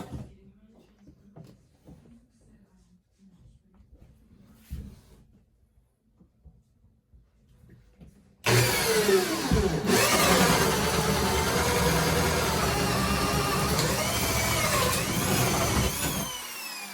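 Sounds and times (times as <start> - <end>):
drill boring into hardwood: 8.5 - 16.9.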